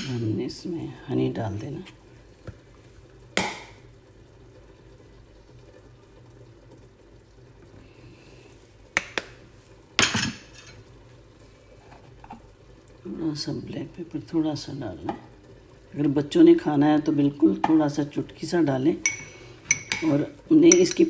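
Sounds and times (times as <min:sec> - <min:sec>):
kitchen utensils knocking and clinking: 0:19.0 - 0:21.0.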